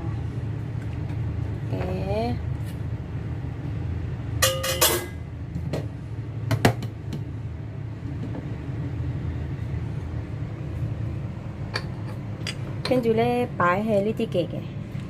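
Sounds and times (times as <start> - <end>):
steady low hum: 0.0 - 15.0
cookware clattering: 4.4 - 5.2.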